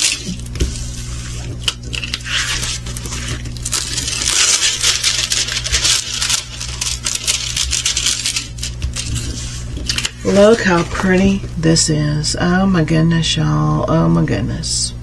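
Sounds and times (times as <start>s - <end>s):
plastic packaging crinkling: 0.0s - 11.6s
low steady hum: 0.0s - 15.0s.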